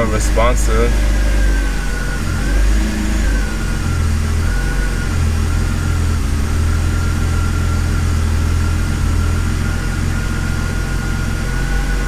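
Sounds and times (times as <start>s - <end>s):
car engine idling: 0.0s - 12.0s
faint steady whine: 0.0s - 12.0s.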